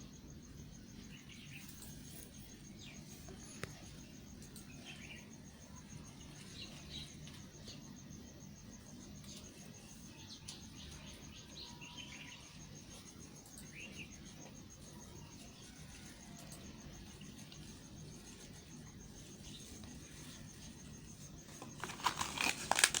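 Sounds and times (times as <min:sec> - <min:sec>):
insects trilling: 0:00.0 - 0:23.0
loud crackling and crunching: 0:21.5 - 0:23.0.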